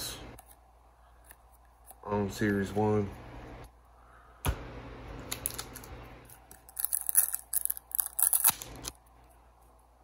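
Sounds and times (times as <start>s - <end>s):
foil pack crinkling and tearing: 5.3s - 5.9s, 6.5s - 9.0s.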